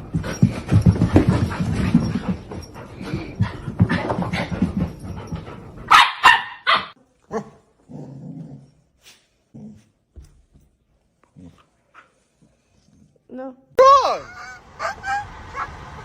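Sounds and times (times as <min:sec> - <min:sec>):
dog barking: 0:05.9 - 0:07.6.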